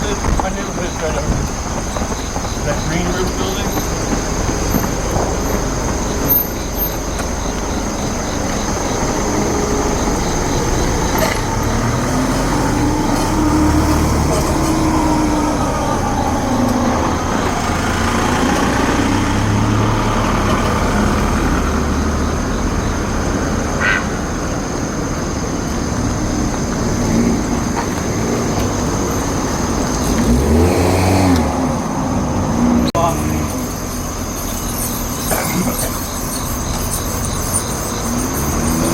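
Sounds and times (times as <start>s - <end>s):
vehicles passing: 0.0s - 38.9s.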